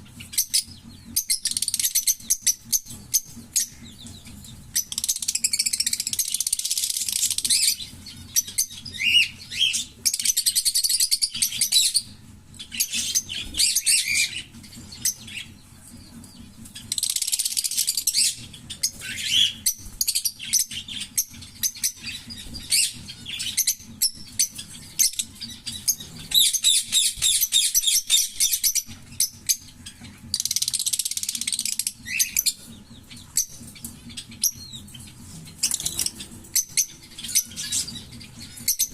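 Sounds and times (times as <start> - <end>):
lovebirds chattering: 0.0 - 38.9.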